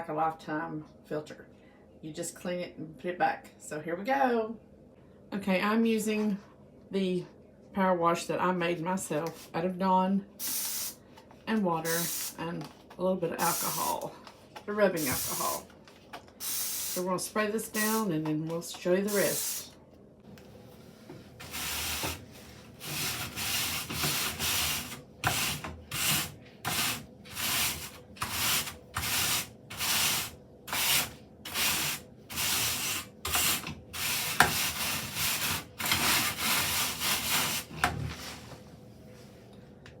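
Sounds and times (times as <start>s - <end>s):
hand sprayer squirting: 15.0s - 17.1s.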